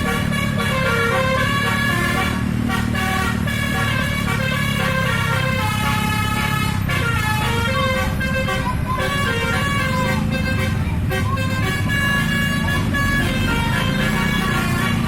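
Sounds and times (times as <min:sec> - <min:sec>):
bus engine rumble: 0:00.0 - 0:15.0
multi-tone bus horn melody: 0:00.0 - 0:15.0.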